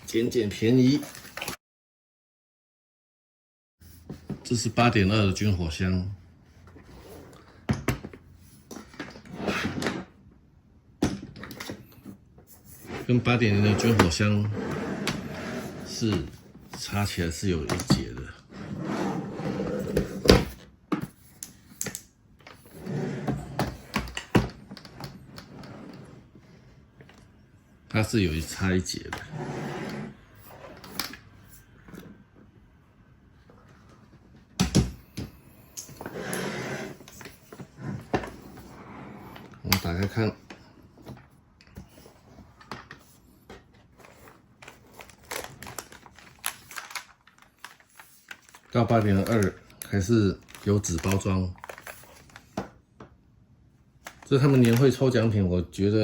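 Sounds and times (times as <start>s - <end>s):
keyboard case being handled: 36.9s - 49.7s
paper wrapping rustling: 43.8s - 52.6s, 54.0s - 55.1s.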